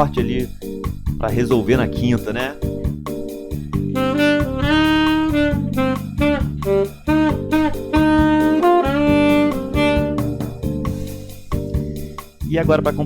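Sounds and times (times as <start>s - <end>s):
backing track with drums and guitar: 0.0s - 13.0s
saxophone playing: 3.8s - 11.1s.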